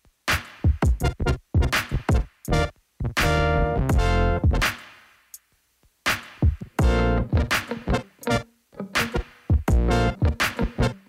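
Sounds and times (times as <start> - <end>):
electronic music: 0.8 - 4.8, 6.6 - 11.0.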